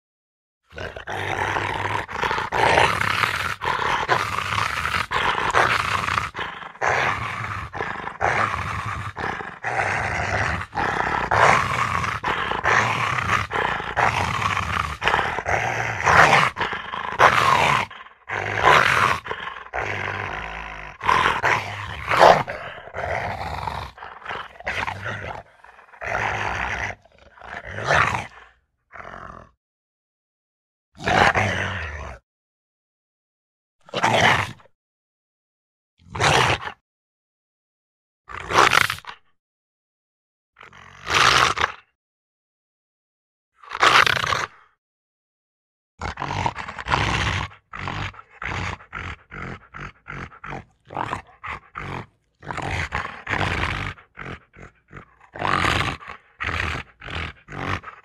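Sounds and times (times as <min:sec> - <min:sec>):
animal growling: 0:00.7 - 0:29.6, 0:31.0 - 0:32.2, 0:40.6 - 0:41.9, 0:46.0 - 0:58.0.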